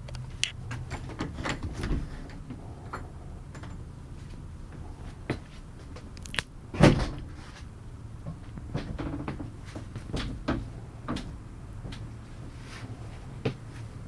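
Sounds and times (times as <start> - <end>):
heavy thump: 6.8 - 7.4.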